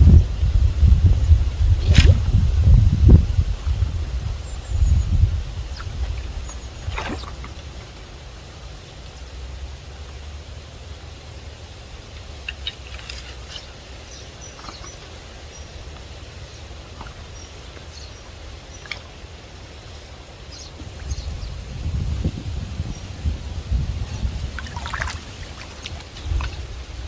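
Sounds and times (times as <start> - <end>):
wind buffeting microphone: 0.0 - 8.2, 20.7 - 27.0.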